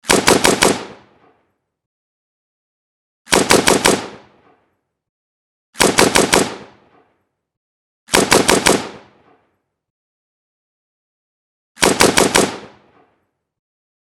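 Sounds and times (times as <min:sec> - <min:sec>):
rifle firing bursts with echo: 0:00.0 - 0:01.4, 0:03.3 - 0:04.8, 0:05.8 - 0:07.2, 0:08.1 - 0:09.6, 0:11.8 - 0:13.3.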